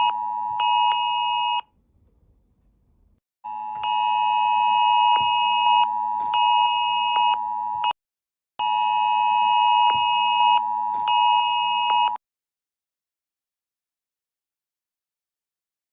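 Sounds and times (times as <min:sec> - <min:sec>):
electronic emergency alert tone: 0:00.0 - 0:01.7, 0:03.5 - 0:08.0, 0:08.6 - 0:12.2.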